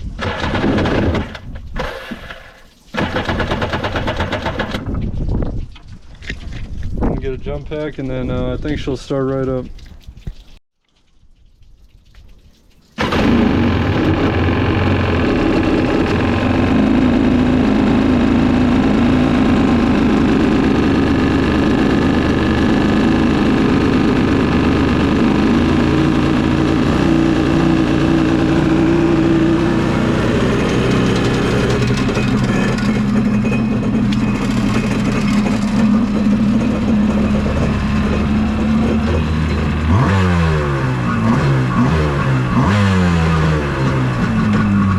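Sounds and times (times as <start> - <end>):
water flowing: 9.6 - 13.5
jet ski engine running: 13.0 - 44.9.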